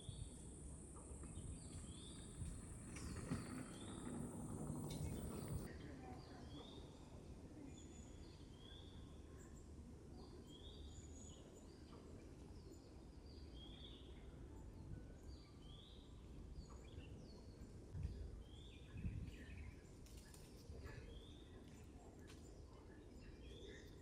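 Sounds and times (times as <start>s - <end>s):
low steady rumble: 0.0s - 5.7s.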